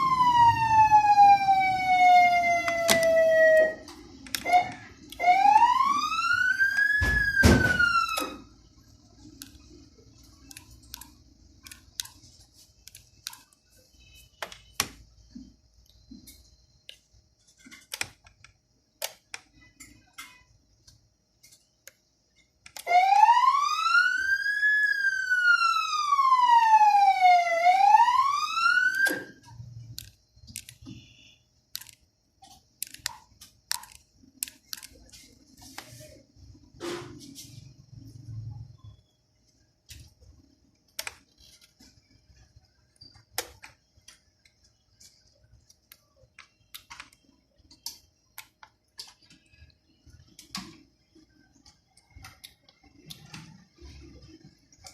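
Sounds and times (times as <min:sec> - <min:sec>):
electronic siren wailing: 0:00.0 - 0:08.5, 0:22.8 - 0:29.7.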